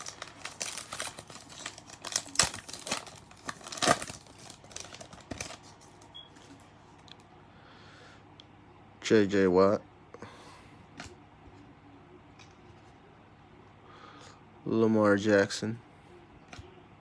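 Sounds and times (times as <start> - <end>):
card pack wrapper crinkling and tearing: 0.0 - 6.6
faint handling noise: 0.0 - 7.3.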